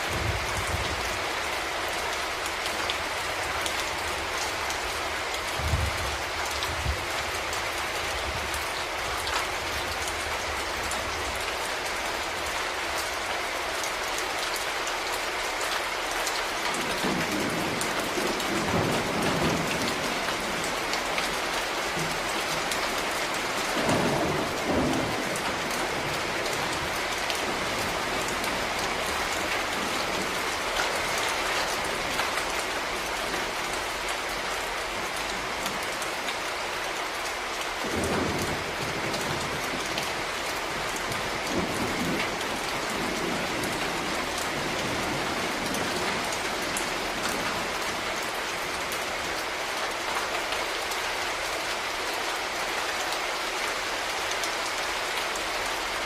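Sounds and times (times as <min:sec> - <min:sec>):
thunder rumbling: 0:00.0 - 0:01.2, 0:16.8 - 0:32.2, 0:37.8 - 0:47.8
heavy rain pattering: 0:00.0 - 0:56.0.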